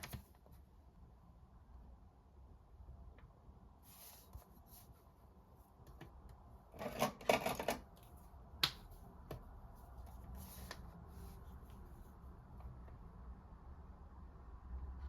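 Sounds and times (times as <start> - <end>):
paper rustling: 9.8 - 12.0.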